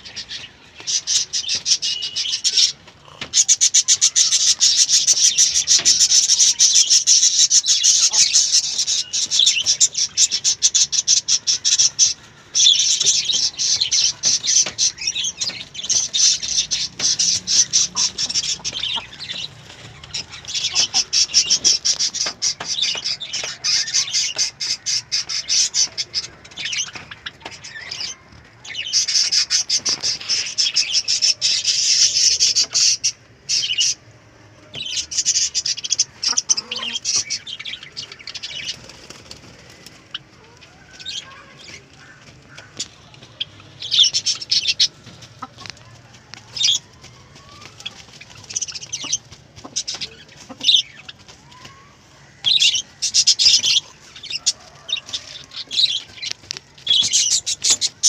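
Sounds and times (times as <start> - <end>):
faint chicken chirping: 0.0 - 58.0
chickens flapping wings: 38.2 - 52.4, 53.0 - 58.0.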